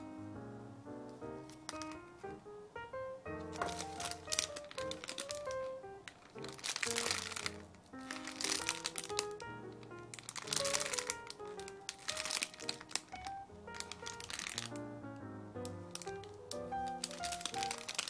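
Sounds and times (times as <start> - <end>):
background music light melody: 0.0 - 18.0
squishy toy crinkling: 1.4 - 2.0, 3.4 - 14.8, 15.6 - 18.0.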